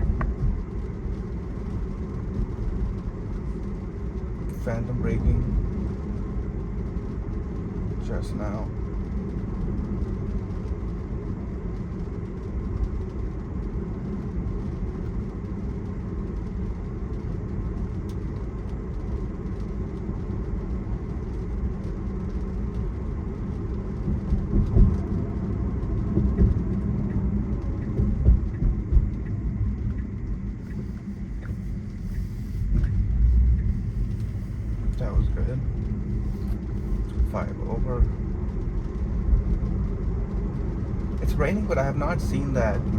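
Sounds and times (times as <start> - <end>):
low thumps: 0.0 - 3.2, 24.0 - 41.3
tyres rumbling on wet road: 0.0 - 42.9.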